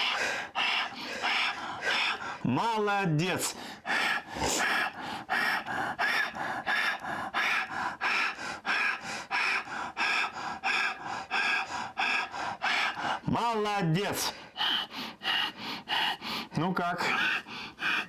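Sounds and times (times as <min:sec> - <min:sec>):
rapid forceful breathing: 0:00.0 - 0:18.0.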